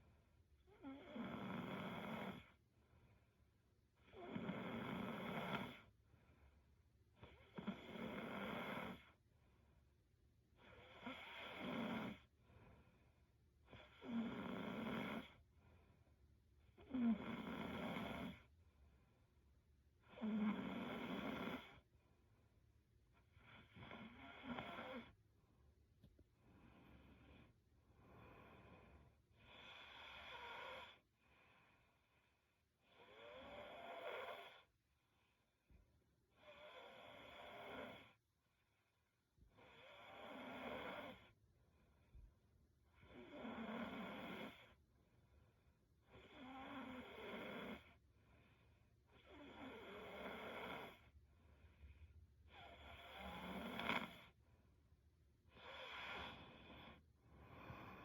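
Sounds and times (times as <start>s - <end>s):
person snoring faintly: 52.6s - 54.3s.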